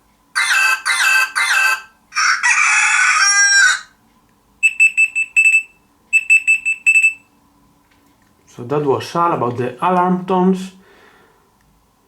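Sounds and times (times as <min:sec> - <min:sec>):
recorded rooster crowing: 0:00.3 - 0:04.0.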